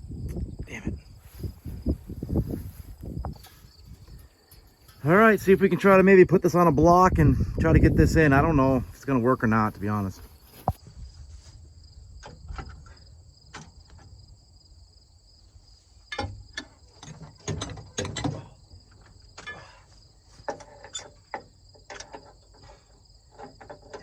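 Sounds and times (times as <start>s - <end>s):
insects chirring: 0.0s - 24.0s
metal knocks clanks and scrapes: 1.4s - 6.0s, 19.4s - 24.0s.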